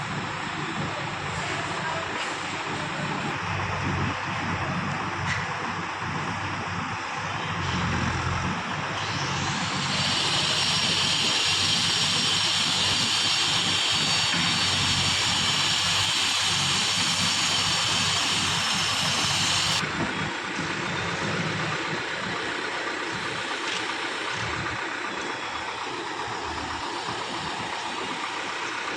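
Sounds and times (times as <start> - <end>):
heavy machinery engine running: 0.0 - 28.9
loud hiss: 8.9 - 19.8.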